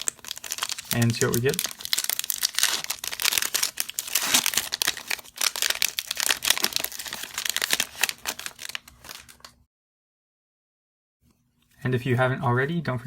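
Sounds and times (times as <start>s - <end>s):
plastic wrapper crinkling: 0.0s - 9.6s.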